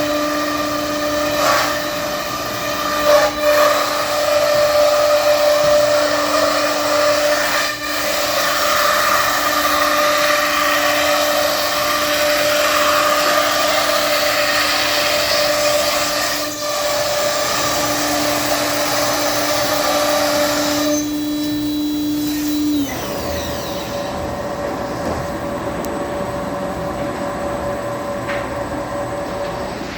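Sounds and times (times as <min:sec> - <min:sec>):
router machine whine: 0:00.0 - 0:29.9.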